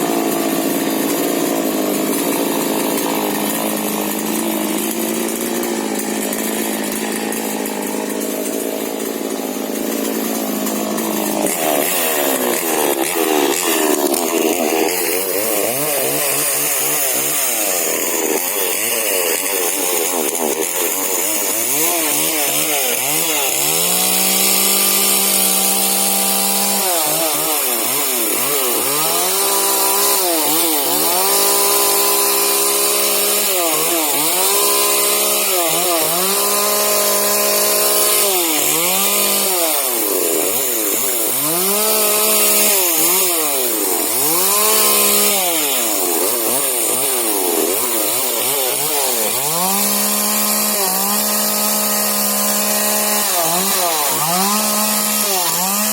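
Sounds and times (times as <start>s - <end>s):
chainsaw revving while cutting: 0.0s - 55.9s.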